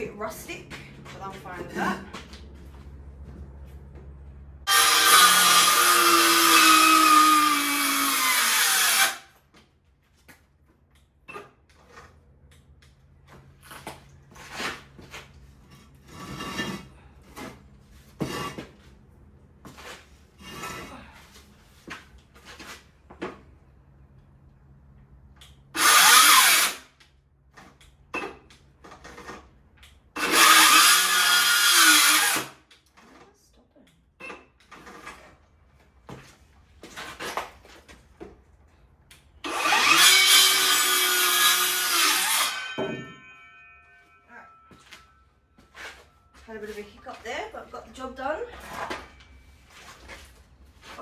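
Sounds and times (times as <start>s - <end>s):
power saw cutting timber: 4.6s - 9.3s, 25.8s - 26.9s, 30.2s - 32.6s, 39.4s - 44.8s.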